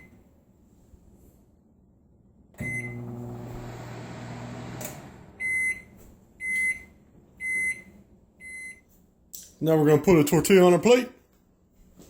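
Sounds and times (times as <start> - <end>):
microwave oven humming: 2.5 - 8.8
microwave beeps: 2.6 - 4.8, 5.4 - 8.9.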